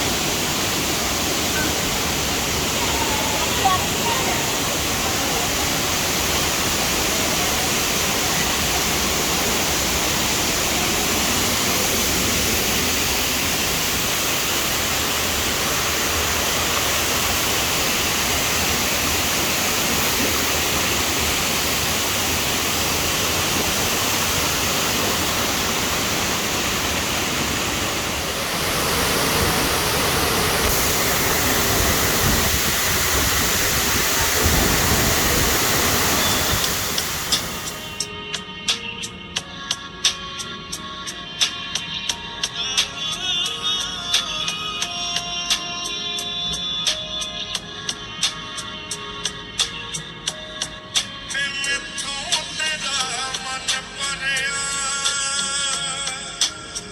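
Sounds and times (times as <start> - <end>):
waterfall roaring: 0.0 - 38.0.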